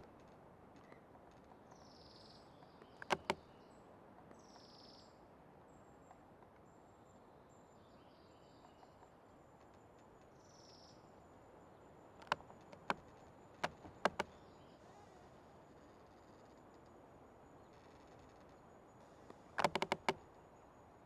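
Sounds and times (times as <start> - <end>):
soft bird chirps: 1.7 - 9.6, 10.3 - 19.4
sharp clicks or knocks: 3.0 - 3.4, 12.2 - 14.4, 19.6 - 20.2.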